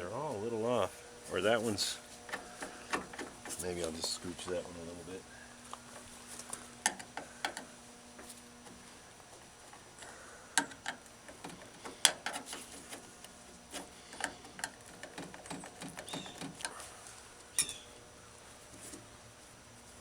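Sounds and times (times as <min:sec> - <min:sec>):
hand tools clicking and knocking: 0:02.3 - 0:04.6, 0:06.8 - 0:07.7, 0:10.6 - 0:16.8.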